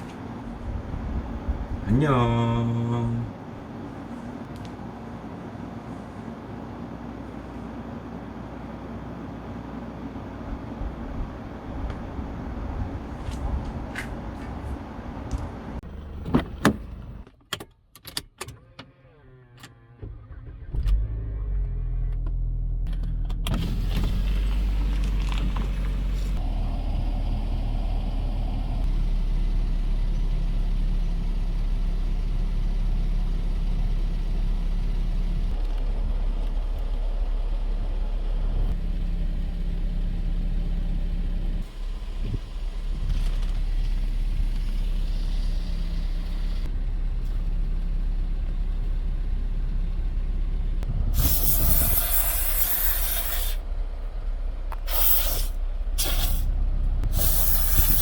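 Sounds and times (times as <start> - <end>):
low mechanical hum: 0.0 - 17.3, 19.1 - 58.0
spray hissing: 51.2 - 53.6, 54.8 - 56.5, 57.1 - 58.0.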